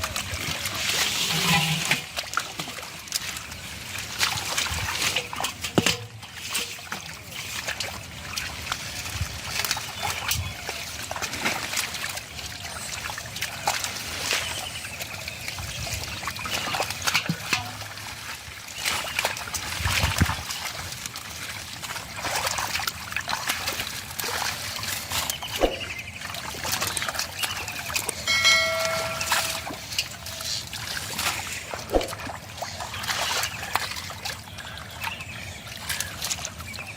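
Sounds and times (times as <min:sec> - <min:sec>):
hands splashing in river water: 0:16.3 - 0:34.4.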